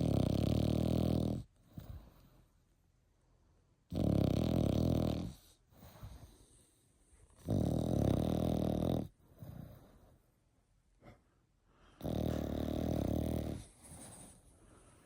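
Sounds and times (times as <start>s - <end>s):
puppy snoring: 0.0s - 2.5s, 3.9s - 10.2s, 11.9s - 14.5s
soft breath: 5.4s - 7.4s, 9.2s - 12.6s, 13.6s - 15.0s.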